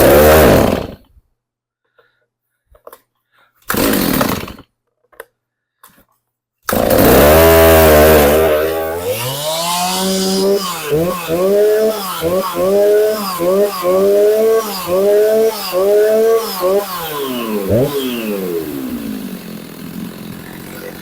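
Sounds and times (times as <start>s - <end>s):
chainsaw pull-starting and running: 0.0s - 1.2s, 3.7s - 4.8s, 6.7s - 21.0s.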